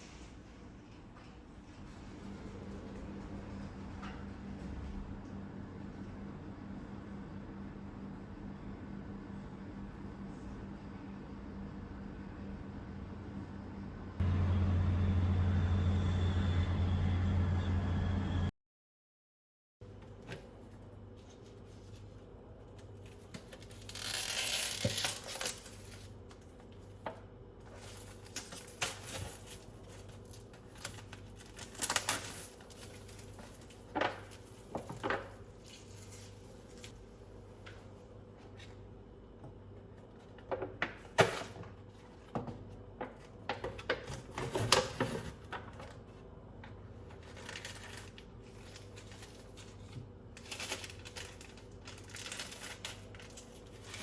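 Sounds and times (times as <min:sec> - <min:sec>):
low steady hum: 0:00.0 - 0:18.5.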